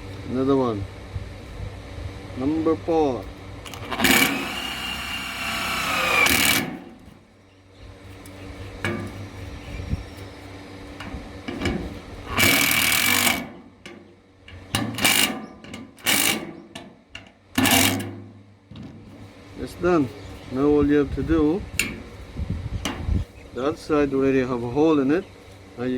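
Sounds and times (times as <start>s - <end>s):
power drill bursts: 3.7s - 7.0s, 12.3s - 13.5s, 15.0s - 15.3s, 16.0s - 16.5s, 17.6s - 18.0s.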